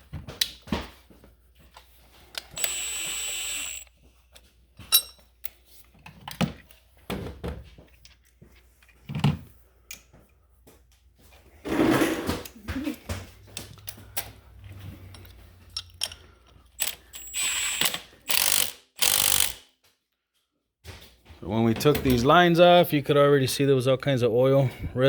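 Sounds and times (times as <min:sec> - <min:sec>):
power tool whining: 0:02.5 - 0:03.9, 0:16.8 - 0:19.6
clicks and knocks of parts: 0:12.3 - 0:19.8.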